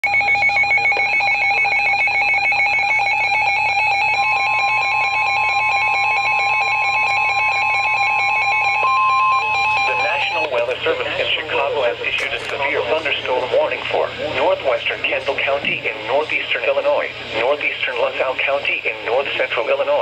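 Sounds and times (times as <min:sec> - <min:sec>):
steady alarm tone: 0:00.0 - 0:12.0, 0:12.7 - 0:20.0
warbling data screech: 0:07.8 - 0:10.5.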